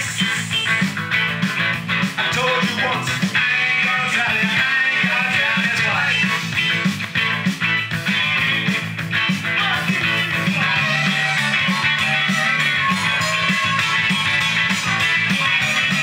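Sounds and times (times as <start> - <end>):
electric guitar: 0.0 - 16.0
instrumental rock band: 0.0 - 16.0.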